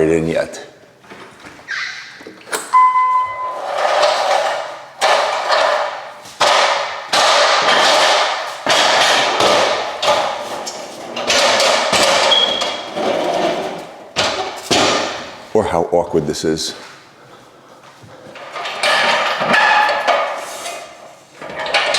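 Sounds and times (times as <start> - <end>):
smoke detector chirp: 2.7 - 3.8.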